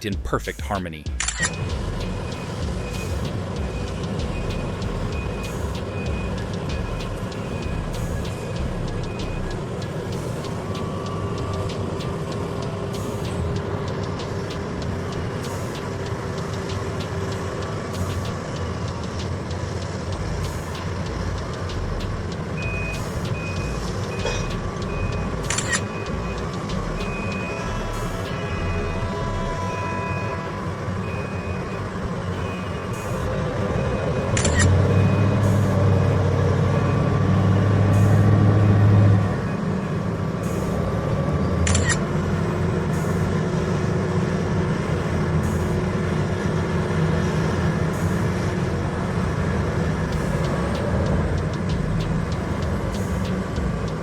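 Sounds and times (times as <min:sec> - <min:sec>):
heavy machinery diesel rumble: 0:00.0 - 0:54.0
reversing alarm beeping: 0:00.0 - 0:54.0.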